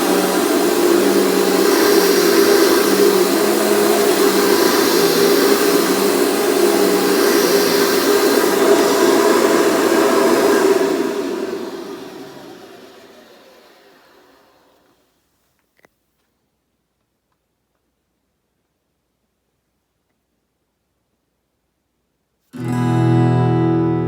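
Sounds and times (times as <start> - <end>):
vacuum cleaner running: 0.0 - 15.0, 22.6 - 24.0.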